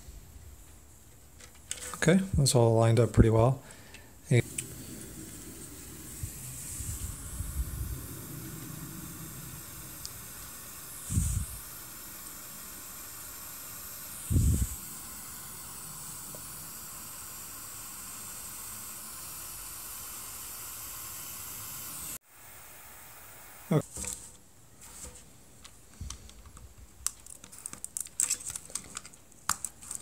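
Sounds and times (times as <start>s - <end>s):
soldering hiss: 3.6s - 23.9s
short loud sizzles: 4.4s - 23.9s.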